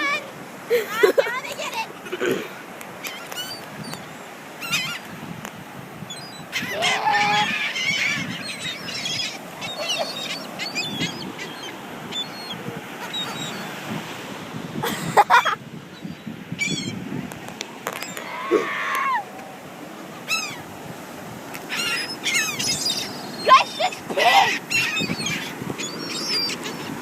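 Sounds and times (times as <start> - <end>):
gulls squawking: 3.0 - 5.1, 6.0 - 13.9, 14.8 - 17.0, 20.0 - 20.8, 21.5 - 27.0.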